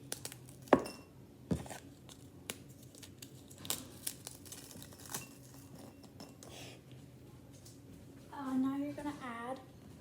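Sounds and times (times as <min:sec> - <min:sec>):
crackers being crushed: 0:00.0 - 0:00.8, 0:01.5 - 0:05.9.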